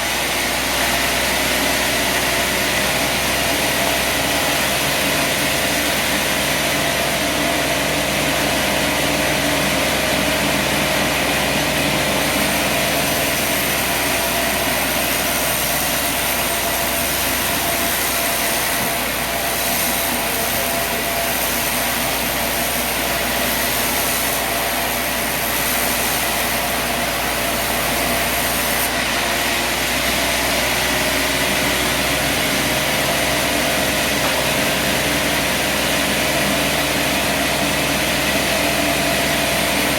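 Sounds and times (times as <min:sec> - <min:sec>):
sawmill running with steady whine: 0:00.0 - 0:39.9.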